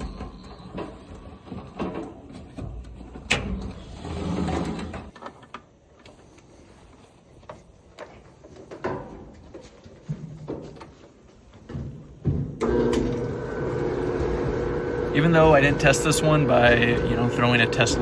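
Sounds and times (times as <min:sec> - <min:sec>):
clicks and scraping inside dryer: 0:00.0 - 0:05.5
dryer drum rumbling: 0:12.6 - 0:18.0.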